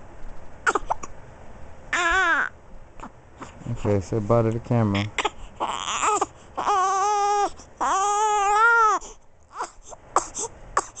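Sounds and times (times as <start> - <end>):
baby fussing: 0.6 - 1.1, 1.9 - 3.7, 5.0 - 11.0
baby crying: 1.9 - 3.5, 5.0 - 11.0.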